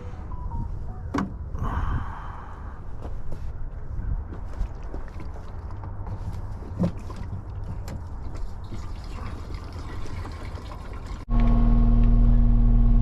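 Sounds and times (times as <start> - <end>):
diesel engine rumbling: 11.3 - 13.0.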